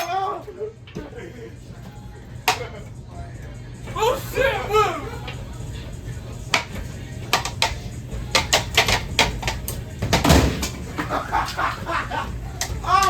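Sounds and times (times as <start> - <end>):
ceiling fan being smashed: 6.4 - 13.0.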